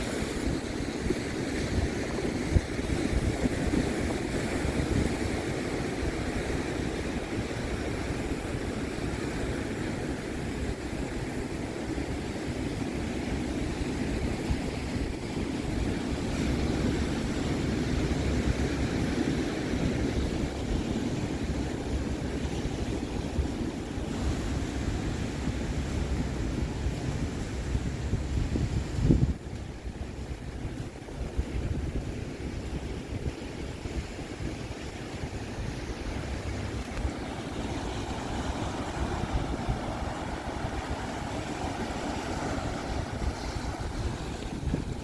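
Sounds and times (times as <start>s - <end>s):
surf breaking on beach: 0.0s - 12.1s, 31.5s - 45.0s
wind on microphone: 0.0s - 45.0s.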